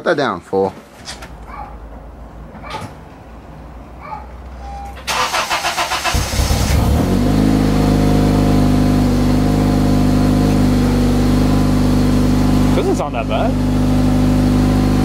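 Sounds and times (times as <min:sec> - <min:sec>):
car starter cranking: 0:05.0 - 0:07.0
car engine idling: 0:05.1 - 0:15.0.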